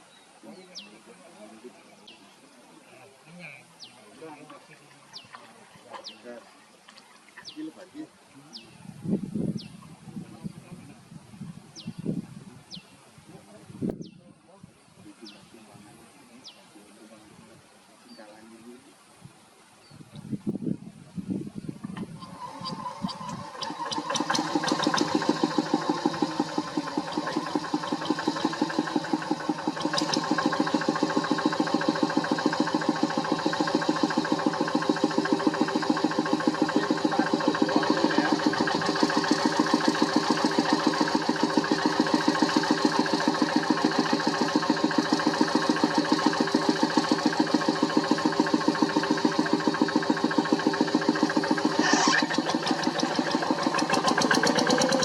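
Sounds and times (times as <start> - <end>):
diesel engine chugging: 21.8 - 55.0.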